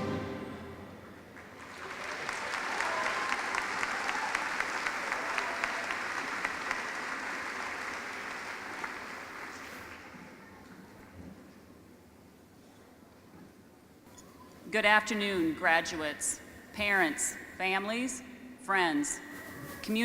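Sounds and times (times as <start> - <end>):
music: 0.0 - 1.0
audience applauding: 1.3 - 10.2.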